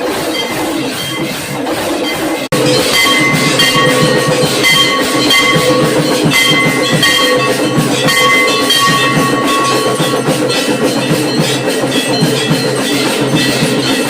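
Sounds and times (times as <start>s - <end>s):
bells ringing: 0.0s - 14.0s
drums beaten rhythmically: 0.0s - 14.0s.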